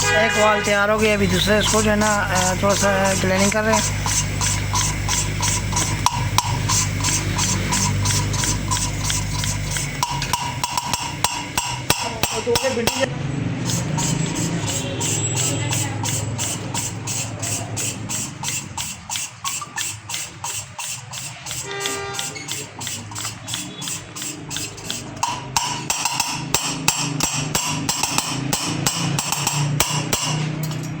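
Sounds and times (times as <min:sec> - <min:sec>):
rhythmic valve tapping: 0:00.0 - 0:31.0.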